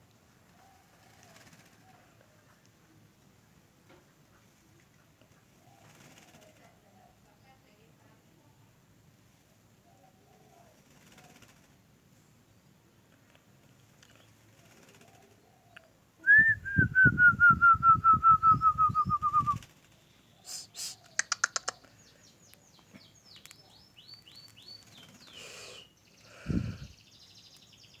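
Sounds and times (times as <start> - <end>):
bird calling rapid falling notes: 16.3 - 19.7
quick high clicks: 20.5 - 21.9.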